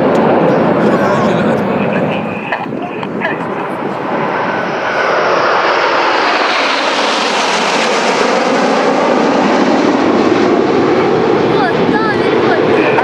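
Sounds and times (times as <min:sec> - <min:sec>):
jet aircraft roaring past: 0:00.0 - 0:13.0.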